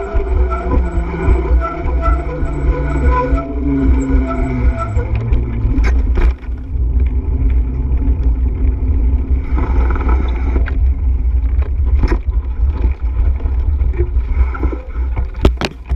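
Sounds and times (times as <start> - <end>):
wind buffeting microphone: 0.0 - 15.9.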